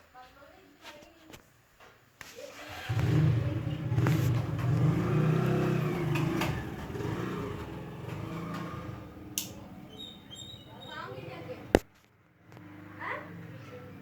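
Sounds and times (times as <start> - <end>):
ceiling fan motor humming: 2.7 - 11.7.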